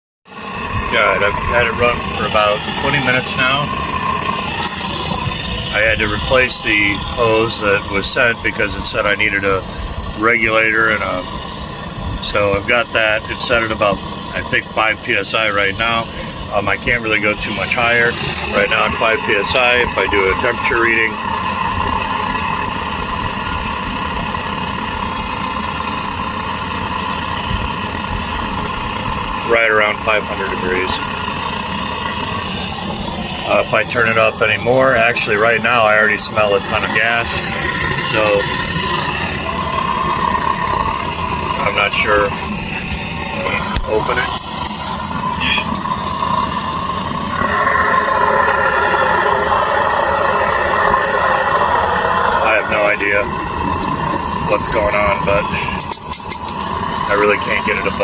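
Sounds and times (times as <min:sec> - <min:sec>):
gas burner roaring: 0:00.3 - 0:58.0.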